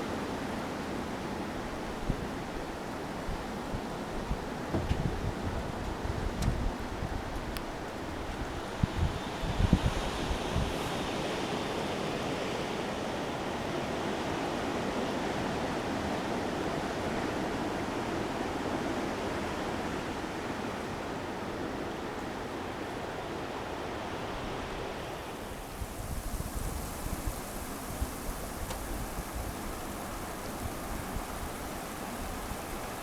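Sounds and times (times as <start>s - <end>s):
wind buffeting microphone: 4.1s - 10.9s.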